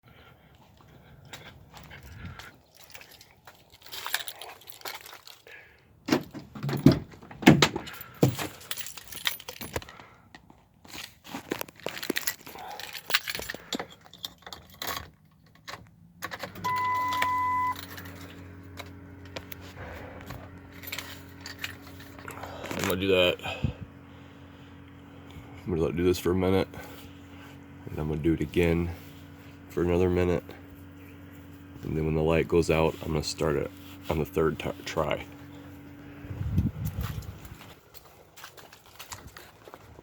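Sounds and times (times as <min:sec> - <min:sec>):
keys jangling: 0:01.8 - 0:05.4, 0:07.8 - 0:10.1, 0:11.8 - 0:19.6, 0:20.2 - 0:22.8
steady low hum: 0:16.5 - 0:39.1
electronic beep: 0:16.6 - 0:17.8.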